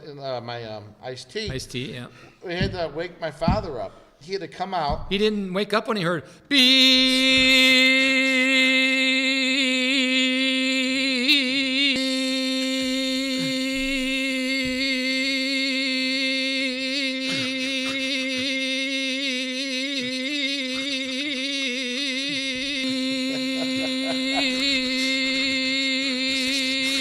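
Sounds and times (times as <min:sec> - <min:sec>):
person imitating car horn: 0:17.0 - 0:27.0.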